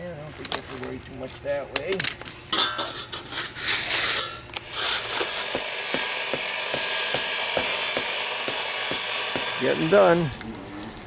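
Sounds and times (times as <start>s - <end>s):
power tool hissing: 2.6s - 10.6s.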